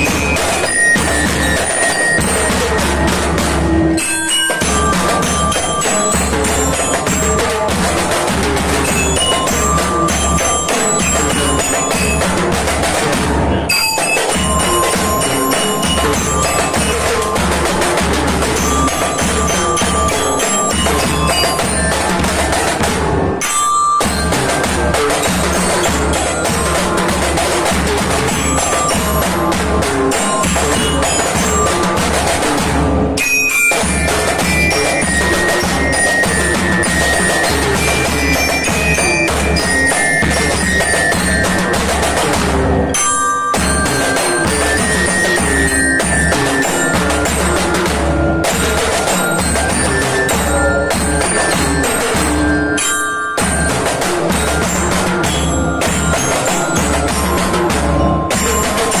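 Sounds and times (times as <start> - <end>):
bass drum beats: 0.0 - 33.2
bell-like melody: 0.0 - 59.0
drum band playing: 0.0 - 59.0
high ringing notes: 0.0 - 59.0.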